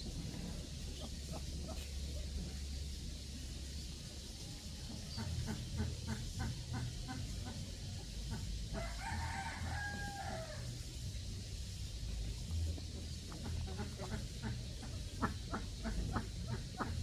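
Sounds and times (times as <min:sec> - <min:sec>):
poultry calling: 0:13.2 - 0:17.0.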